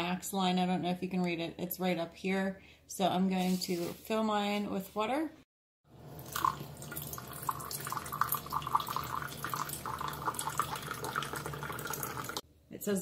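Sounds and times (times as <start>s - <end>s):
water running into plastic tank: 6.0s - 12.4s.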